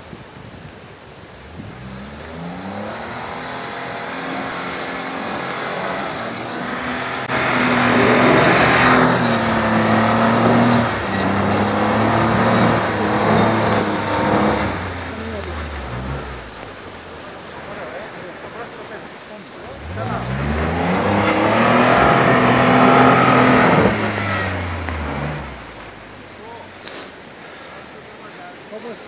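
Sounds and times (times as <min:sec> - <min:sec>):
rush of rough noise: 0:00.0 - 0:29.0
engine revving under load: 0:01.4 - 0:17.0, 0:19.7 - 0:26.4.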